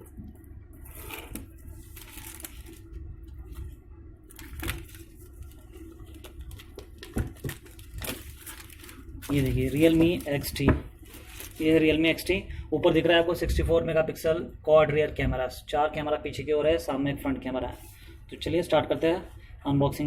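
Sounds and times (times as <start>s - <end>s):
wrapping crinkling and tearing: 0.8s - 3.7s, 4.3s - 11.9s.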